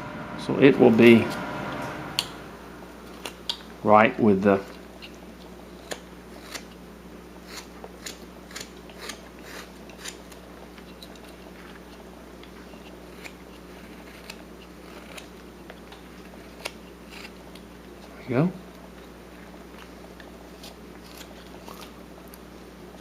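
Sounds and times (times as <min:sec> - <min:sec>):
carving knife cutting wood: 0:05.8 - 0:06.8, 0:07.4 - 0:10.4, 0:12.8 - 0:15.4, 0:16.2 - 0:17.4.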